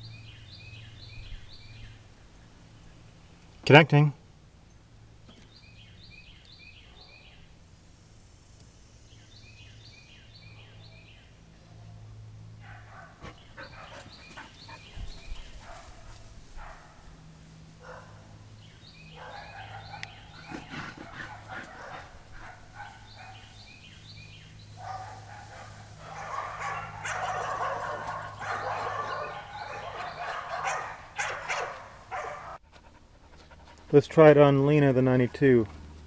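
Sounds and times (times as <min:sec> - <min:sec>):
bird singing: 0:00.0 - 0:03.4, 0:04.6 - 0:07.6, 0:09.0 - 0:11.8, 0:13.3 - 0:15.7, 0:18.5 - 0:21.1, 0:22.7 - 0:25.2, 0:26.1 - 0:31.7
dog whining and yipping: 0:26.1 - 0:32.6.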